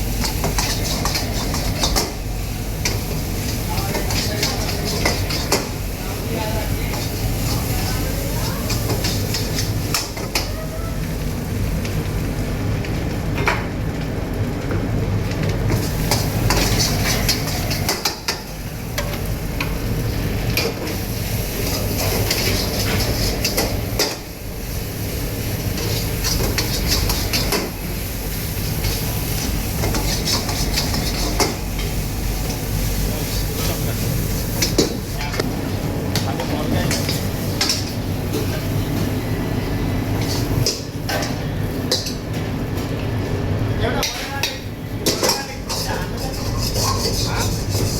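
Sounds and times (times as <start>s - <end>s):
food sizzling: 0.0s - 47.9s
metal ladle scraping a wok: 45.7s - 47.9s.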